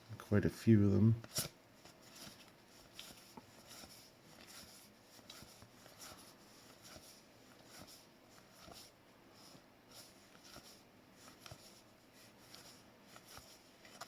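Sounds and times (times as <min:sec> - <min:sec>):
trading cards being handled: 0:01.2 - 0:14.0.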